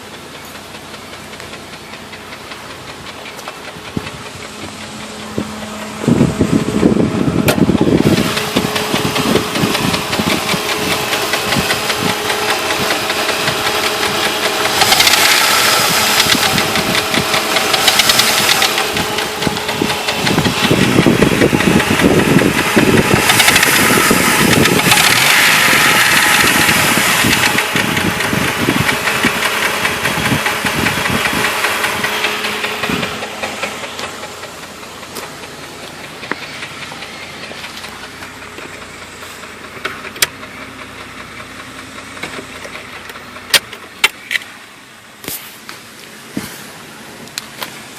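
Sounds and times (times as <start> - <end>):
car engine knocking: 0.0 - 47.9
loud hiss: 12.1 - 21.1.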